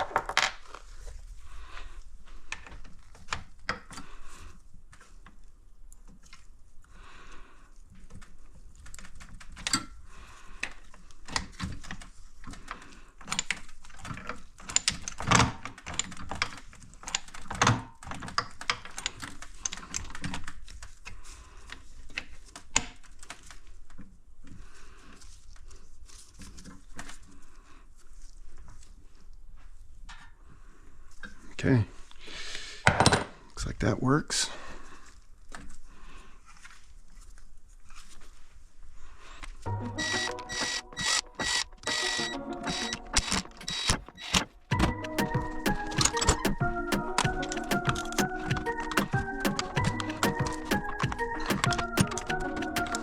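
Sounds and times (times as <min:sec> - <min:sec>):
metal parts and tools clicking: 0:13.2 - 0:20.4, 0:40.0 - 0:53.0.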